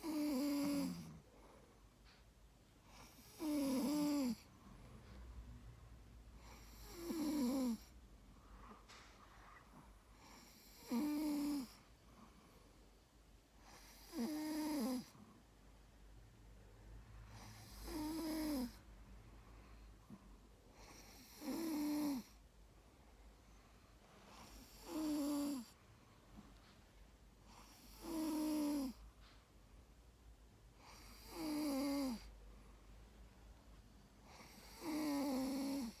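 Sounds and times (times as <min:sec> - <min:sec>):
dog snoring: 0:00.0 - 0:01.3, 0:02.9 - 0:04.5, 0:06.4 - 0:08.0, 0:10.1 - 0:11.8, 0:13.6 - 0:15.2, 0:17.3 - 0:18.8, 0:20.1 - 0:22.4, 0:24.3 - 0:25.8, 0:27.5 - 0:29.0, 0:30.8 - 0:32.3, 0:34.2 - 0:36.0.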